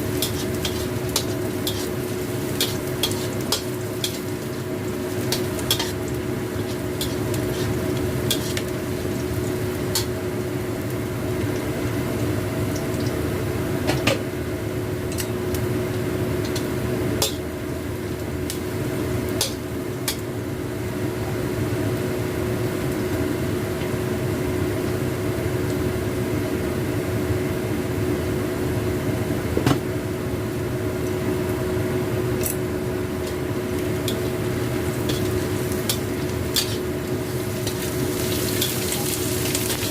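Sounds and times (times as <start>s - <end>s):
steady hum: 0.0s - 26.8s, 27.6s - 39.9s
stir-fry sizzling in a pan: 0.0s - 39.9s
spatula scraping a pan: 0.1s - 4.2s, 6.6s - 8.6s, 35.0s - 36.9s.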